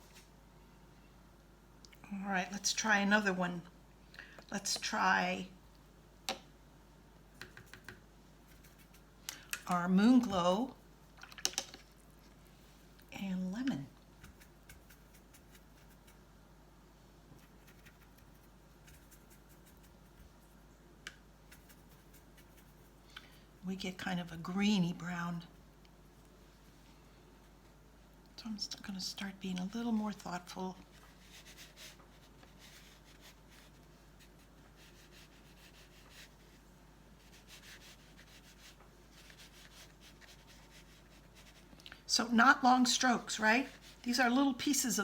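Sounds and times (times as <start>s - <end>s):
brush tapping in paint palette: 7.4s - 8.0s
brush scratching on paper: 7.4s - 9.1s, 14.2s - 16.2s, 17.4s - 20.6s, 21.5s - 23.0s, 30.8s - 41.7s, 43.3s - 44.2s.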